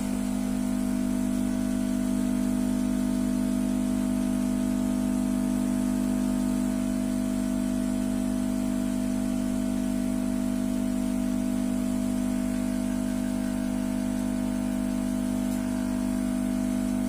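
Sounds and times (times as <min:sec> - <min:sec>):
engine idling: 0:10.0 - 0:17.0.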